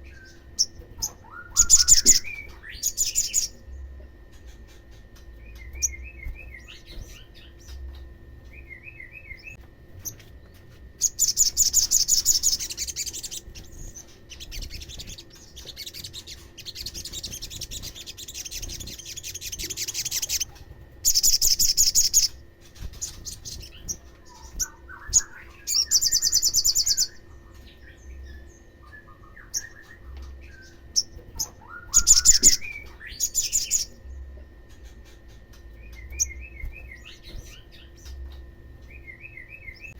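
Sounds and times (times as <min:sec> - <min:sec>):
bird high rapid trills: 0:00.3 - 0:03.6, 0:11.0 - 0:27.7, 0:30.7 - 0:34.0.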